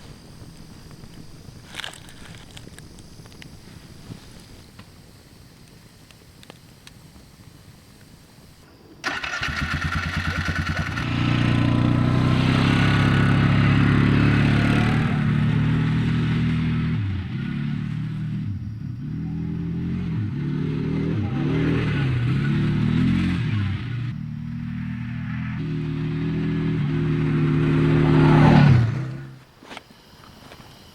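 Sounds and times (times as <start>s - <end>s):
vehicle engine starting and revving: 9.0s - 29.4s.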